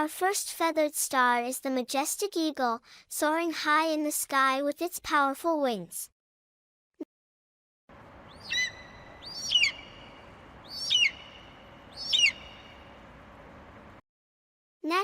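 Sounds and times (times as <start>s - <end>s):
steady background hiss: 7.9s - 14.0s
eagle screeching: 8.3s - 10.1s, 10.7s - 12.6s.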